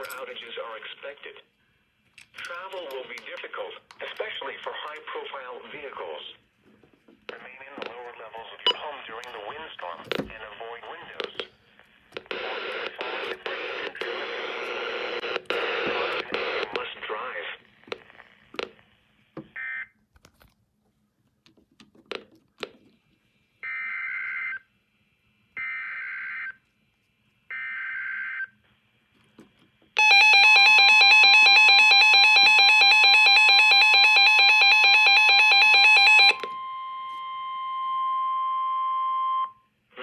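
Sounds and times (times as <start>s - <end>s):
loud pulsing alarm tone: 30.0s - 37.0s
steady warning alarm tone: 30.0s - 39.6s.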